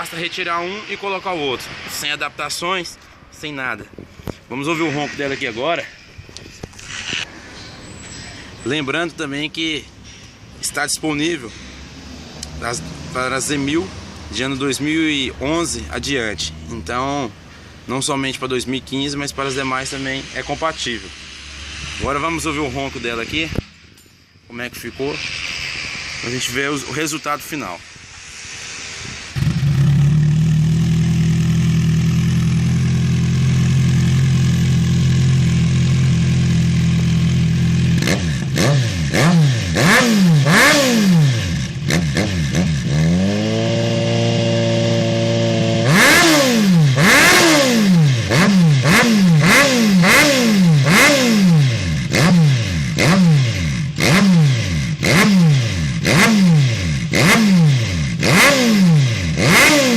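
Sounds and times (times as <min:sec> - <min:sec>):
motorcycle engine idling: 0:29.4 - 0:38.6.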